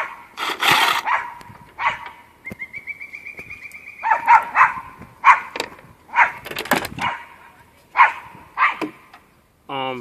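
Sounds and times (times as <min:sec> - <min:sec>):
dog barking: 0:01.0 - 0:02.2, 0:04.0 - 0:06.4, 0:07.0 - 0:08.8.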